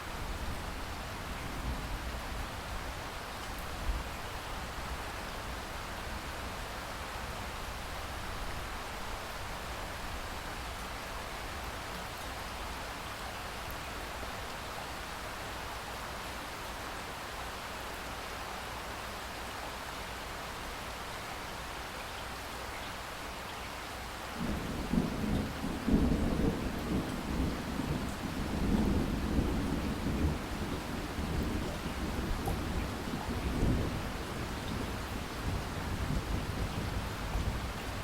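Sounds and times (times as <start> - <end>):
steady rain falling: 0.0 - 38.0
low rumble of thunder: 24.4 - 38.0.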